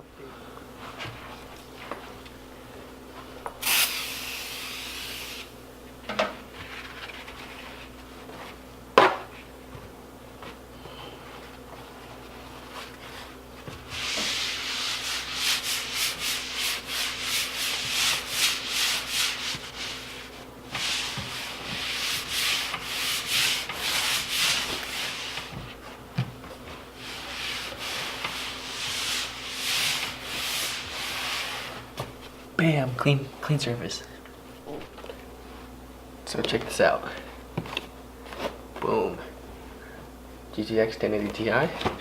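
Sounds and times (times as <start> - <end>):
cloth rubbing desk surface: 0.8 - 2.2, 6.5 - 9.6, 11.2 - 32.5.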